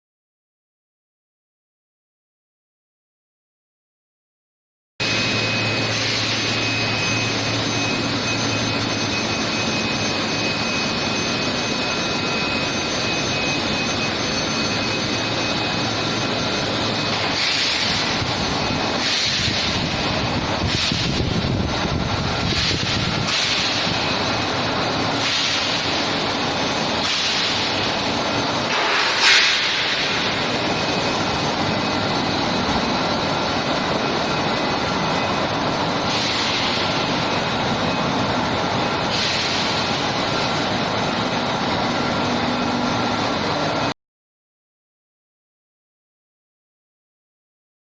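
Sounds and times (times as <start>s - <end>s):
high-pitched tones: 5.0s - 19.0s
industrial machinery running: 5.0s - 44.0s.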